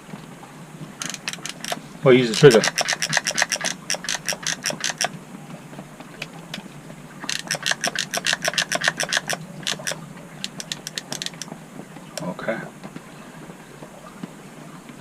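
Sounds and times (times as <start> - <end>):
soldering iron solder feed clicking: 1.0 - 5.1, 7.3 - 11.5.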